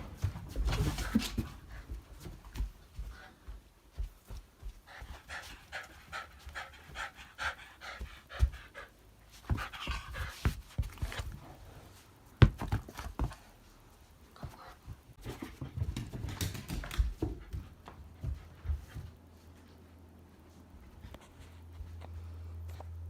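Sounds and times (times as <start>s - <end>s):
dog panting rapidly: 0.9s - 11.3s.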